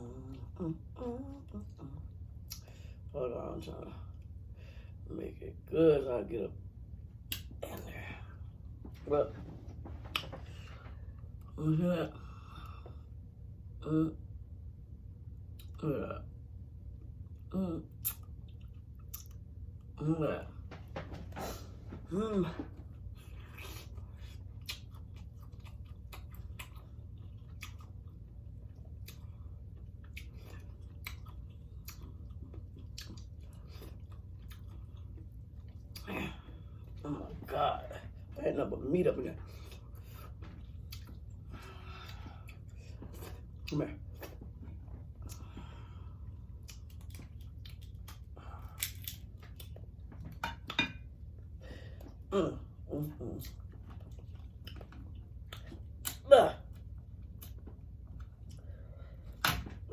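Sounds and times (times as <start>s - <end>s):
steady low hum: 0.0s - 59.9s
wet clicks and mouth smacks: 7.2s - 7.6s, 10.0s - 10.4s, 18.0s - 19.4s
chewing with wet mouth smacks: 7.2s - 7.8s, 9.8s - 11.6s, 17.0s - 19.9s, 22.8s - 37.0s, 39.5s - 52.3s, 53.1s - 59.9s
crab shell cracking: 46.7s - 49.6s.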